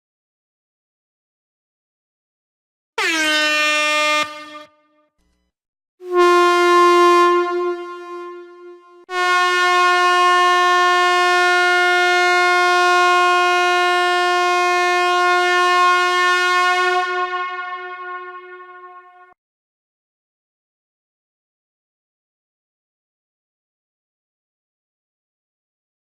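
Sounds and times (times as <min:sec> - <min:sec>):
air horn blasts: 0:03.0 - 0:05.0, 0:06.0 - 0:19.4.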